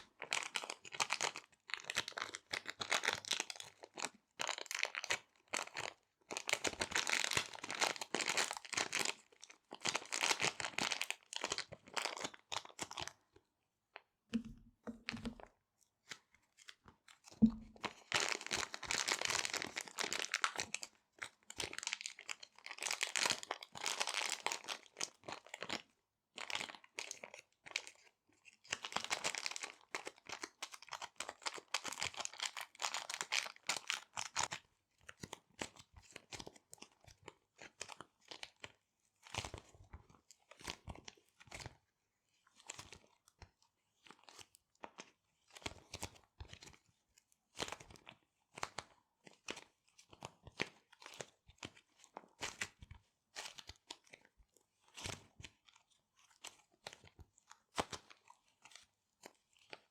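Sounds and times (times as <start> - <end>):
soft thumps: 14.4 - 15.5, 17.4 - 17.8
plastic bags crinkling: 17.5 - 20.5.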